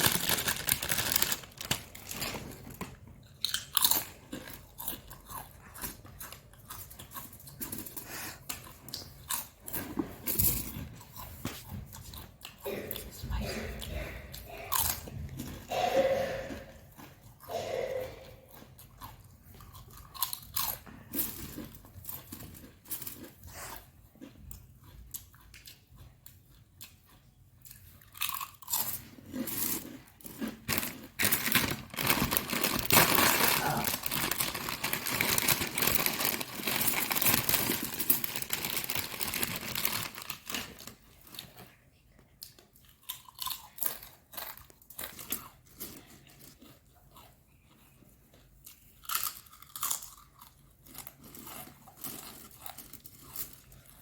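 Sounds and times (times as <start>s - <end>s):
person crunching and chewing food: 0.0s - 54.0s.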